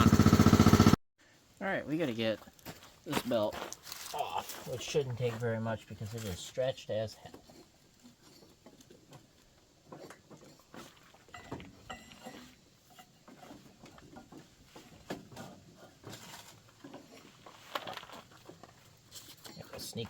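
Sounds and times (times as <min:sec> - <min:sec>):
clicks and rattles of hand work: 0:07.2 - 0:20.0.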